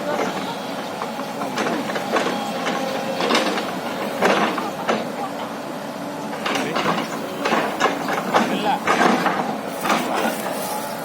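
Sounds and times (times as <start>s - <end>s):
excavator engine running: 0.0s - 11.0s
knocks: 6.4s - 10.1s
metallic clanks and squeaks: 6.4s - 11.0s.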